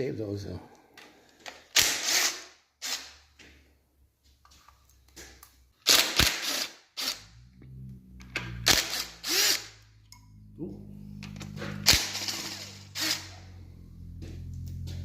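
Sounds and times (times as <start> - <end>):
power tool bursts: 8.6 - 9.7, 11.8 - 13.4.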